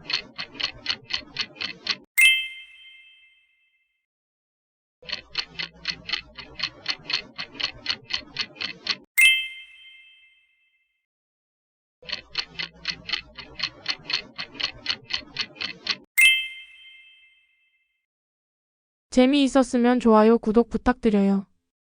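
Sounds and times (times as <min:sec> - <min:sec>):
fast clock ticking: 0:00.0 - 0:02.1, 0:05.0 - 0:09.1, 0:12.0 - 0:16.1
bright bell ding: 0:02.2 - 0:03.4, 0:09.2 - 0:10.4, 0:16.2 - 0:17.4.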